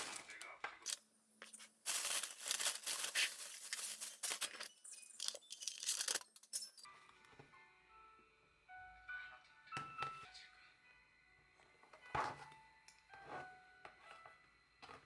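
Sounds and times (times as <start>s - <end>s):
packaging crinkling: 0.9s - 6.3s
soft music: 1.9s - 15.0s.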